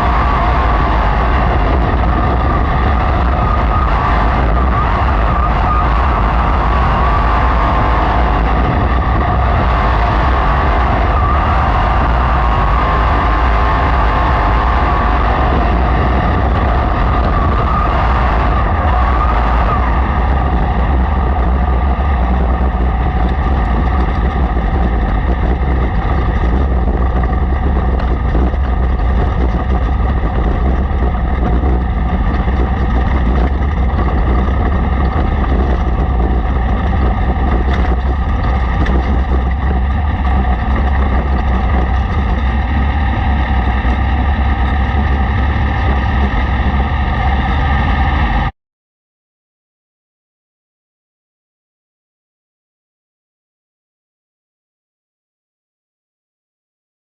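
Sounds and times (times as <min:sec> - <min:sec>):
race car engine running hard: 0:00.0 - 0:48.5.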